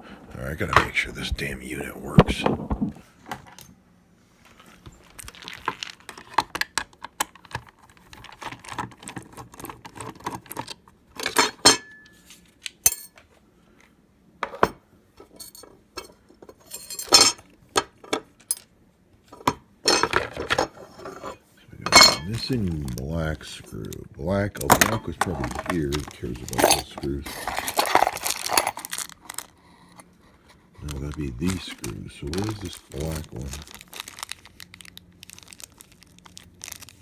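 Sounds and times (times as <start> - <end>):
small metal parts clinking: 12.9 - 13.2, 15.2 - 18.7, 24.6 - 30.0.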